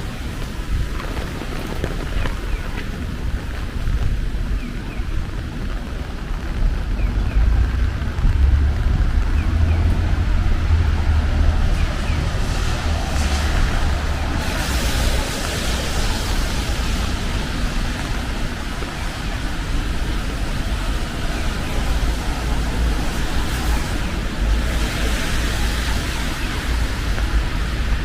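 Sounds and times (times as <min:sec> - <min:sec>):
rain: 0:00.0 - 0:28.0
traffic on wet roads: 0:00.0 - 0:28.0
vehicle tyre hiss passing: 0:09.5 - 0:28.0.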